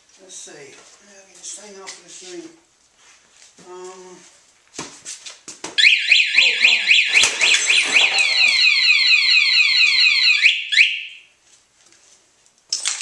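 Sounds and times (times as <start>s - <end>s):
motorcycle alarm siren: 5.8s - 11.3s.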